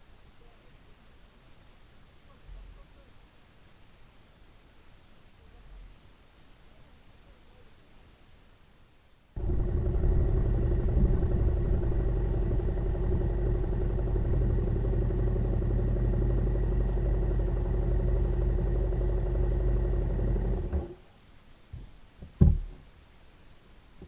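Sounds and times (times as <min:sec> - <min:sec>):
vehicle engine idling: 0:09.4 - 0:21.0.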